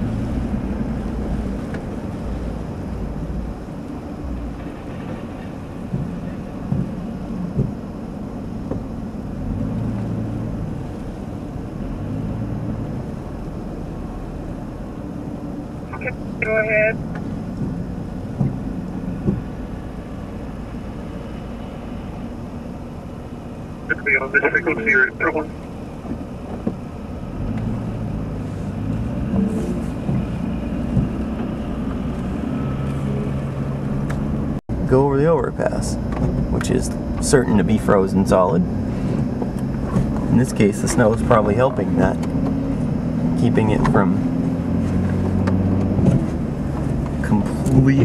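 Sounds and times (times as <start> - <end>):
vehicle engine running: 0.0 - 48.0
tyres rumbling through snow: 23.8 - 35.0, 35.6 - 48.0.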